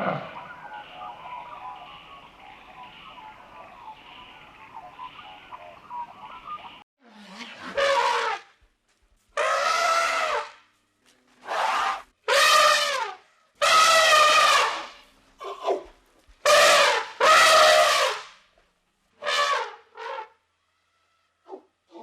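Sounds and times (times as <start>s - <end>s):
animal calling: 0.0s - 7.5s.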